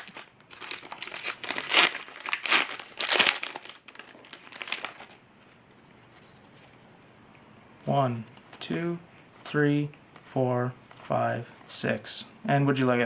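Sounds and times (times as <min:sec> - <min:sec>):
wrapper crinkling: 0:00.0 - 0:05.2.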